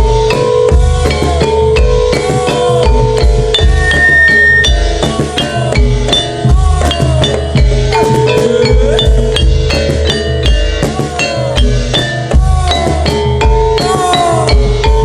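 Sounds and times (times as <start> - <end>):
deep drum beats: 0.0 - 15.0
metal tuned percussion ringing: 0.0 - 15.0.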